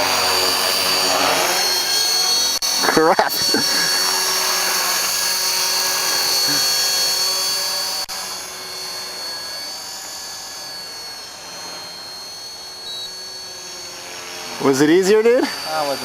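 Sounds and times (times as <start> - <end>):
rc helicopter motor whine: 0.0 - 16.0
rotor blades rushing: 0.0 - 16.0.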